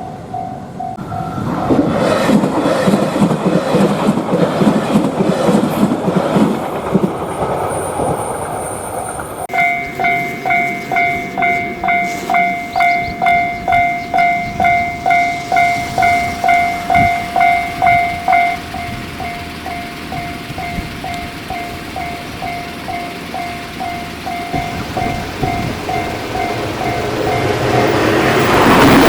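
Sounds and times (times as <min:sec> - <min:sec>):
level crossing warning bell: 0:00.0 - 0:01.8, 0:09.5 - 0:29.0.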